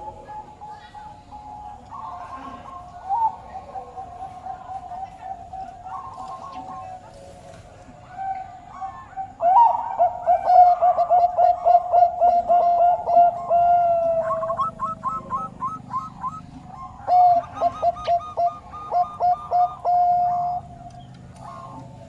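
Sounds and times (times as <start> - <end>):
dove cooing: 0.0 - 22.0
higher repeated coos: 8.2 - 20.8.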